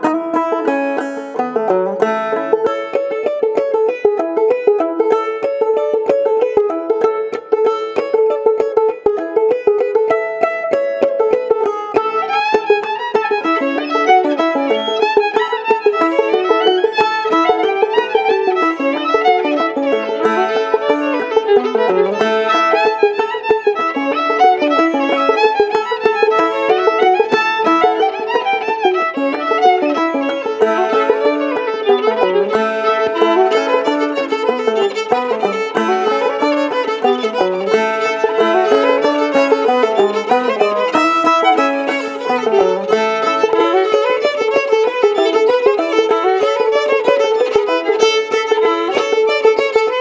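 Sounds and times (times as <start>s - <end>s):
banjo playing: 0.0s - 50.0s
fiddle melody: 0.0s - 50.0s.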